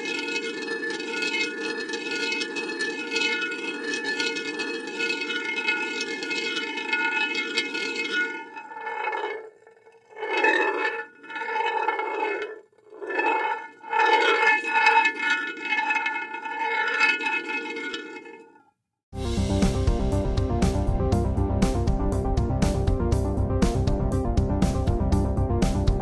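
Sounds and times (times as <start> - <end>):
glass marble rolling on metal: 0.0 - 18.7.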